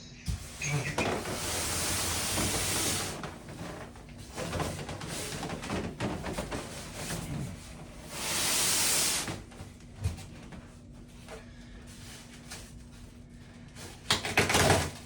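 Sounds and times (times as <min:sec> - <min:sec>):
hissing scrape: 0:00.3 - 0:05.5, 0:08.0 - 0:09.4.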